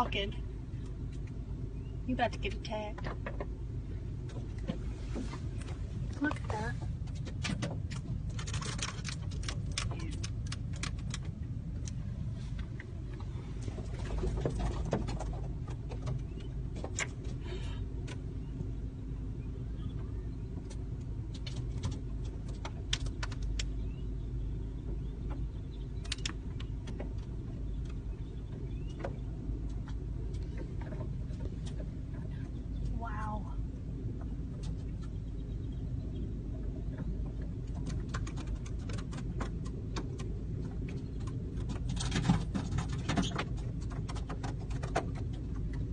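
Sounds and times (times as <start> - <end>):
car engine idling: 0.0 - 45.9
flock of birds clicking and calling: 19.8 - 24.2, 24.8 - 33.1, 34.2 - 45.9.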